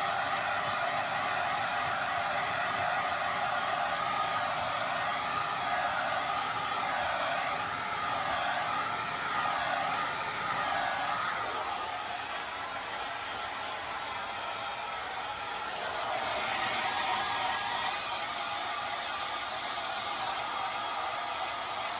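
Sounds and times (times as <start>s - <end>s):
hair dryer running: 0.0s - 21.9s.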